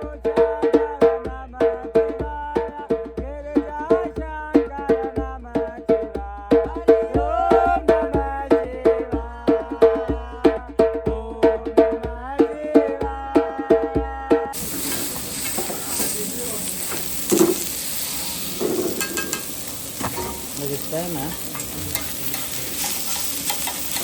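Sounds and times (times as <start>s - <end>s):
tabla drumming: 0.0s - 17.9s.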